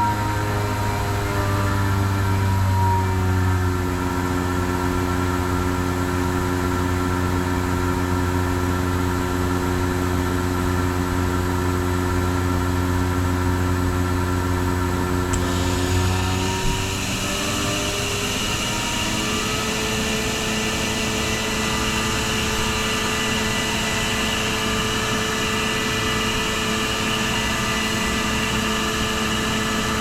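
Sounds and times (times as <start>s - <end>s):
air compressor humming: 13.2s - 30.0s.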